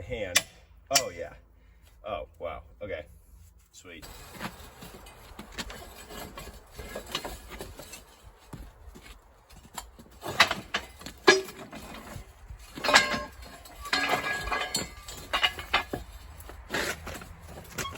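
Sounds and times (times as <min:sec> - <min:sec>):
metal parts clinking and clanking: 0:04.0 - 0:17.9.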